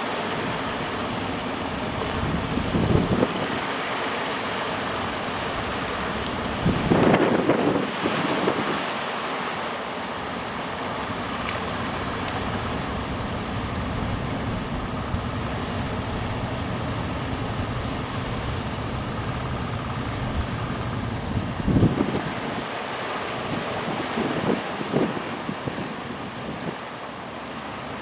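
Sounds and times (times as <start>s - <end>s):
boat engine droning: 0.0s - 28.0s
breaking surf: 0.0s - 28.0s
wind buffeting microphone: 1.8s - 3.8s, 4.8s - 9.0s, 10.1s - 22.7s.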